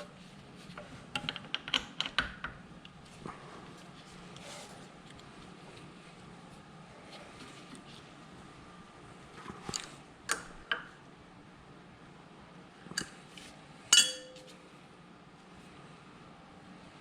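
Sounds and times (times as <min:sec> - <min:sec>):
metal tools clanking: 0:13.9 - 0:14.5.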